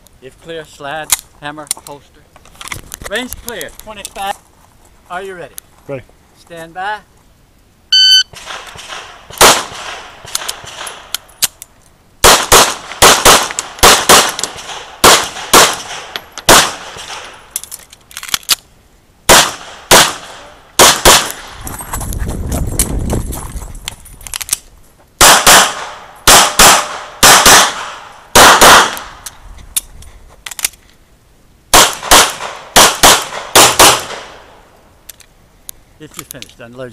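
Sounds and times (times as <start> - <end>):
electronic timer beep: 7.9 - 8.3
pistol shots: 8.3 - 11.1, 12.2 - 17.4, 19.3 - 21.5, 25.2 - 29.2, 31.7 - 34.5.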